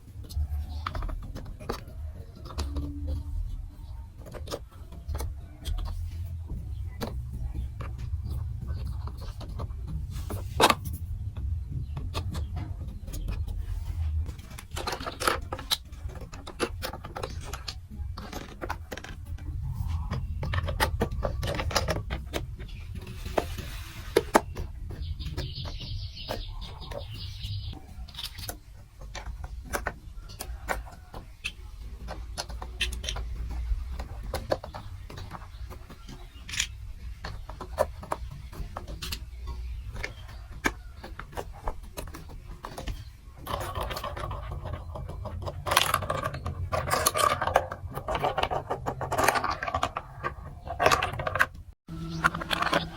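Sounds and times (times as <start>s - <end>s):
low rumble of handling: 0.0s - 52.9s
plastic pieces clicking: 14.2s - 52.9s.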